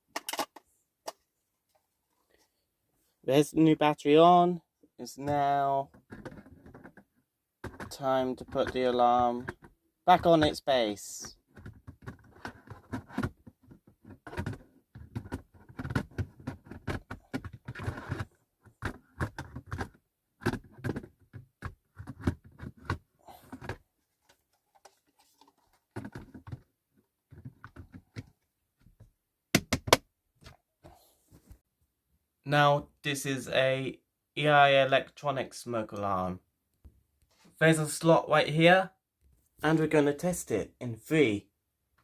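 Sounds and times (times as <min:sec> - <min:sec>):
plastic knocks scrapes and clicks: 0:05.2 - 0:10.6, 0:11.3 - 0:30.6.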